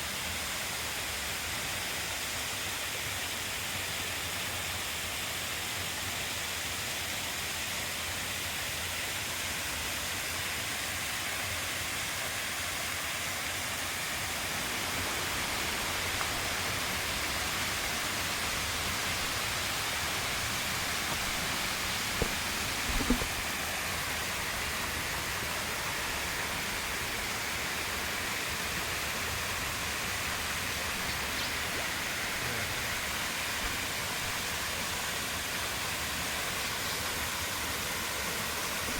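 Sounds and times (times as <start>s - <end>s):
waterfall pouring: 13.6s - 38.9s
short knocks: 17.8s - 23.4s.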